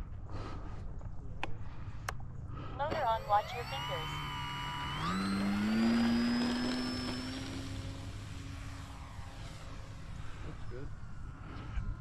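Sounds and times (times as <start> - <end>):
model airplane motor whining: 2.6 - 12.0.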